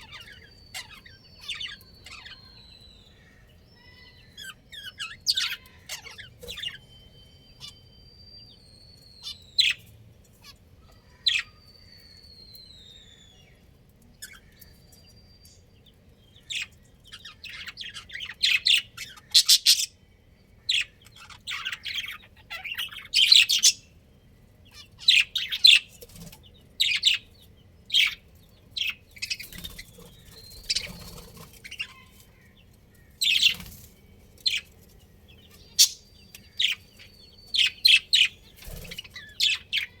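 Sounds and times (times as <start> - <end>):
budgerigars chirping: 0.0 - 7.9, 9.0 - 11.7, 16.4 - 20.0, 20.6 - 24.0, 24.7 - 40.0.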